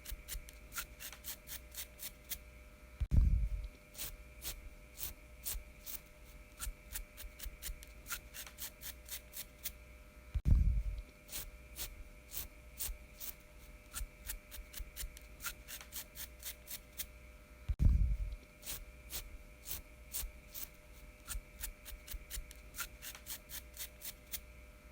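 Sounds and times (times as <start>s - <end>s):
fingernails scratching beard: 0.0s - 2.4s, 4.0s - 9.8s, 18.6s - 24.4s.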